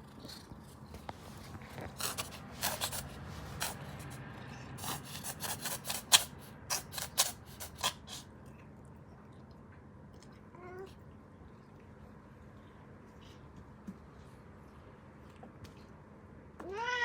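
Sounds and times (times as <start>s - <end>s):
scratchy rubbing and rasping: 1.0s - 4.2s, 4.8s - 8.2s.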